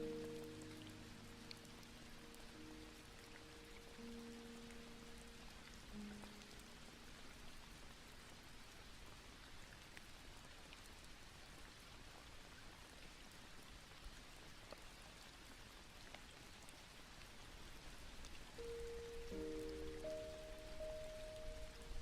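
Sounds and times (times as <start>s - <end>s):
raindrops ticking: 0.0s - 8.8s, 18.2s - 22.0s
faint rain: 0.0s - 22.0s.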